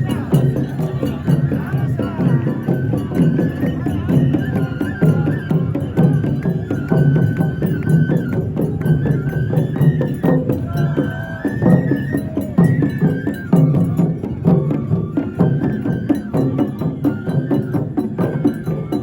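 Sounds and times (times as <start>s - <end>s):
drum and percussion strikes: 0.0s - 19.0s
high flute melody: 0.0s - 19.0s.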